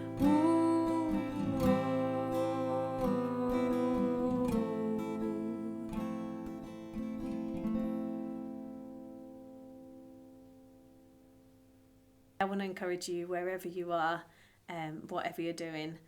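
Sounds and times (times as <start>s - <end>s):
acoustic guitar strumming: 0.0s - 12.1s.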